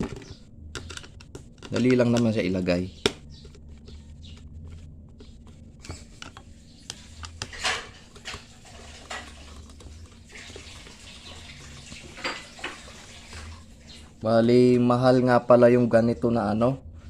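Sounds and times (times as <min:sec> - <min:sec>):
fan parts clicking: 0:00.0 - 0:11.1
parts scraping together: 0:00.0 - 0:11.1.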